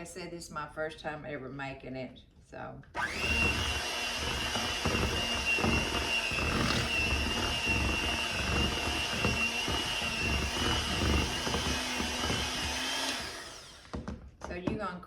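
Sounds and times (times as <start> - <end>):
electric mixer whining: 3.0 - 14.2.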